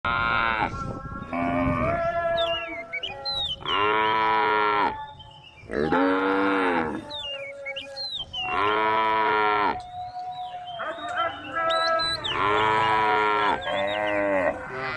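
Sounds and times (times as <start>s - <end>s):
cows mooing: 0.1s - 2.8s, 3.6s - 5.0s, 5.7s - 7.1s, 8.5s - 9.9s, 11.5s - 14.9s.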